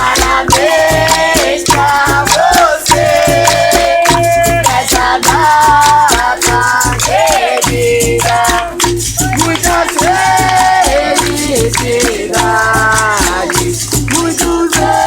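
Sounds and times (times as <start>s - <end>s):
berimbau rhythm: 0.0s - 15.0s
call-and-response singing: 0.0s - 15.0s
percussive strokes: 0.0s - 15.0s.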